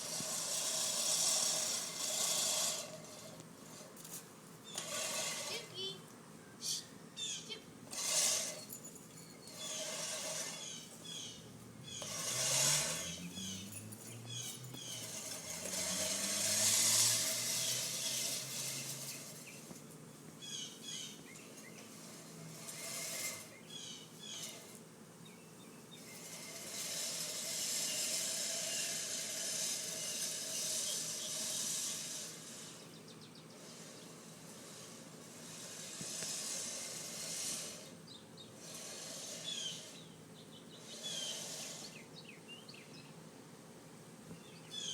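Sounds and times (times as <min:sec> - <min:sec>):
small birds chirping: 0:04.6 - 0:07.7, 0:08.5 - 0:43.3, 0:44.2 - 0:44.9
engine hum rising in pitch: 0:09.2 - 0:19.8.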